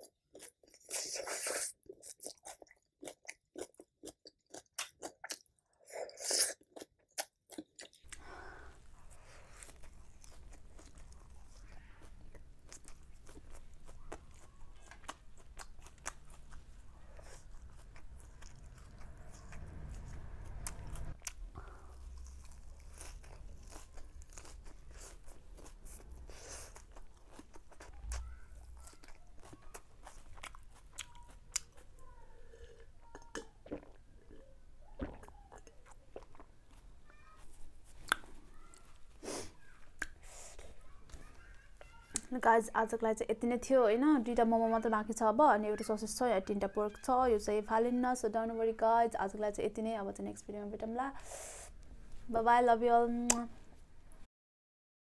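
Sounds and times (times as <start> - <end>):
person chewing food: 0.0 - 41.3
low steady hum: 14.5 - 26.3.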